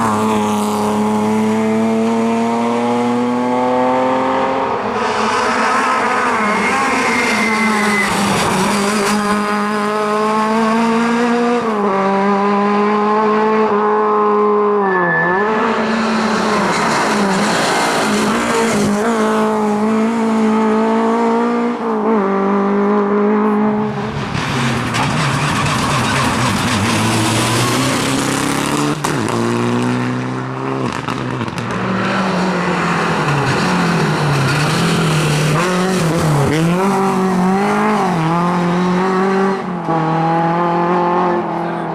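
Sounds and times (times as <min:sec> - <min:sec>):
rally car engine at high revs: 0:00.0 - 0:41.9.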